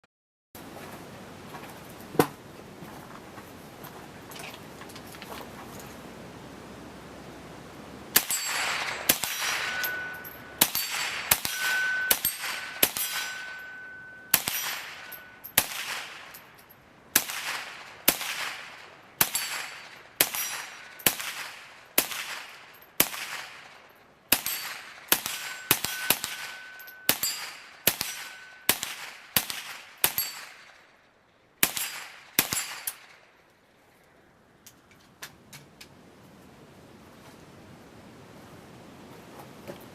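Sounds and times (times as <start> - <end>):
rifle gunshots: 8.2 - 13.6, 14.3 - 16.3, 17.2 - 23.7, 24.3 - 30.7, 31.6 - 33.2
steel targets ringing: 8.2 - 16.8, 18.7 - 21.5, 23.7 - 29.1, 30.0 - 30.8.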